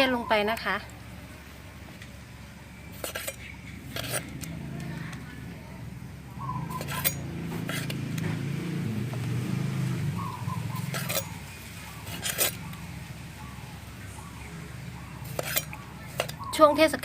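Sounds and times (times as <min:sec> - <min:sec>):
utensils clinking against dish: 0:02.9 - 0:04.5, 0:06.7 - 0:08.0, 0:10.8 - 0:11.4, 0:12.0 - 0:12.6, 0:15.2 - 0:16.4.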